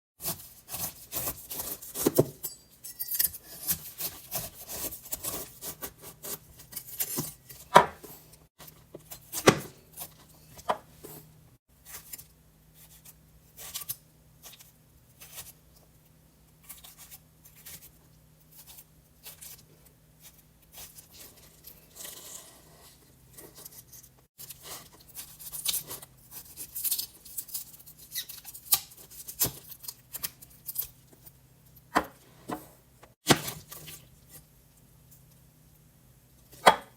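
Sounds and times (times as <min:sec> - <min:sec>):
knife cutting pineapple: 0:00.2 - 0:02.4, 0:03.2 - 0:08.1.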